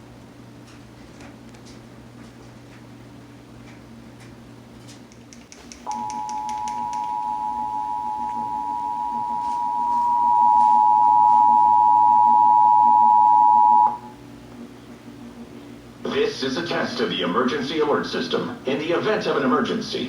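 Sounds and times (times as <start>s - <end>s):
two-tone alert signal: 5.9s - 14.1s.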